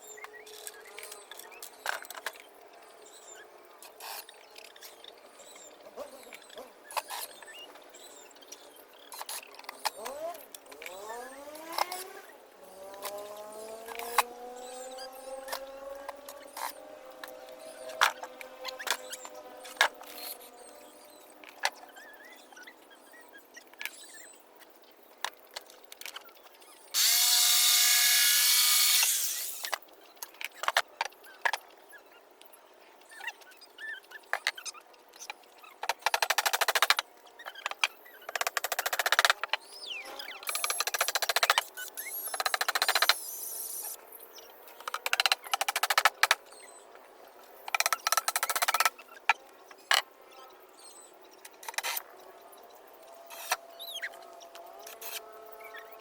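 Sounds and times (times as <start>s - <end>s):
power tool motor whirring: 27.0s - 29.8s.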